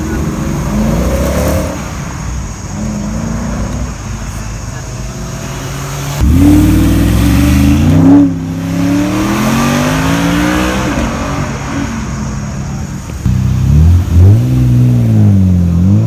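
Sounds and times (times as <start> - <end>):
car engine accelerating hard: 5.0 - 16.0.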